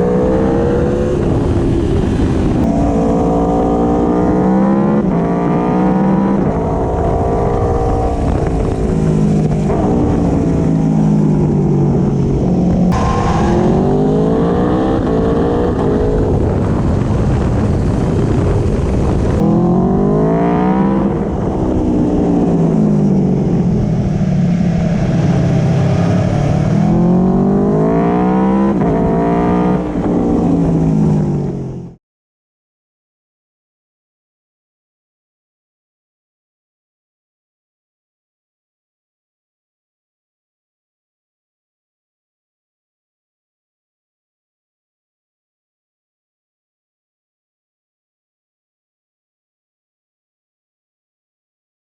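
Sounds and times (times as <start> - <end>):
motorcycle engine revving: 0.0 - 31.8.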